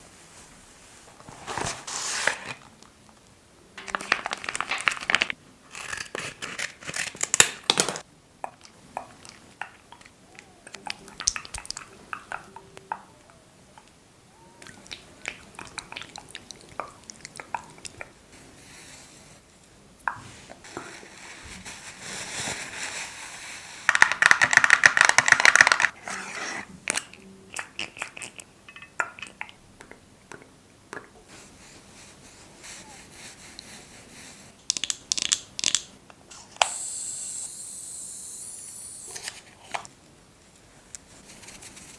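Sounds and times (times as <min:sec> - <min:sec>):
scratchy crinkling noise: 0:00.0 - 0:08.1, 0:20.2 - 0:26.6, 0:39.2 - 0:41.9.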